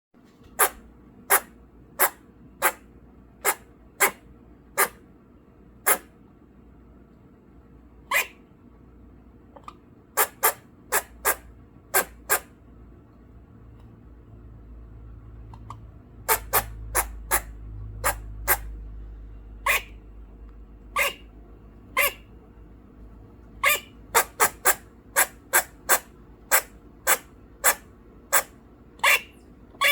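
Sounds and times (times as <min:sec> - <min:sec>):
squirrel alarm barks: 0:00.6 - 0:05.0, 0:05.8 - 0:06.1, 0:08.1 - 0:08.4, 0:10.2 - 0:12.5, 0:16.2 - 0:18.8, 0:19.6 - 0:20.0, 0:20.9 - 0:22.4, 0:23.6 - 0:29.9.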